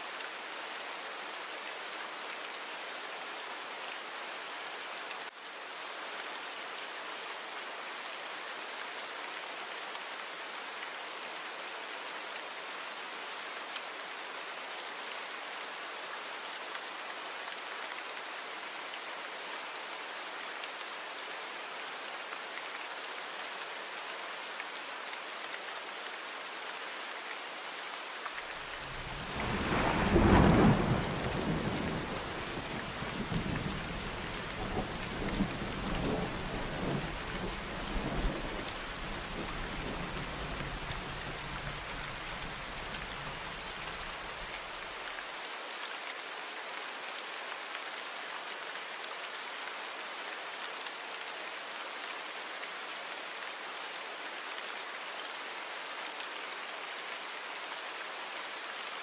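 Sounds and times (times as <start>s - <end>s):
steady rain falling: 0.0s - 59.0s
thunder rumbling: 28.9s - 32.2s.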